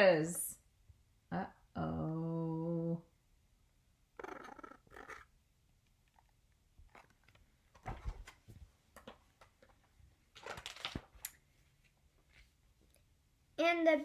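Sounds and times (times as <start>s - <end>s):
book page rustling: 6.9s - 12.6s.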